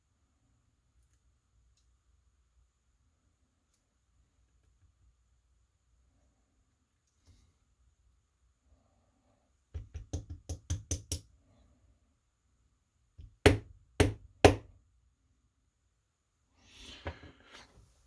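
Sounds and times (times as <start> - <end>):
lock cylinder knocking on hard surface: 9.8 - 11.2.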